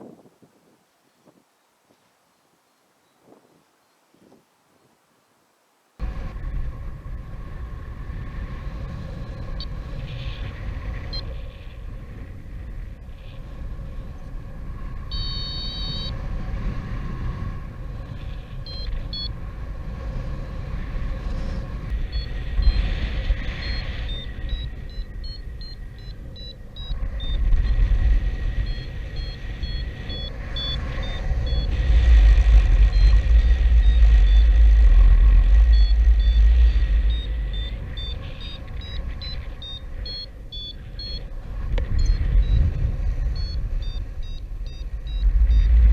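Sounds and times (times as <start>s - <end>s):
strong wind buffeting microphone: 0.0s - 5.1s, 6.0s - 45.9s
high-pitched chirps or beeps: 15.1s - 16.1s, 35.6s - 41.2s, 43.4s - 45.8s.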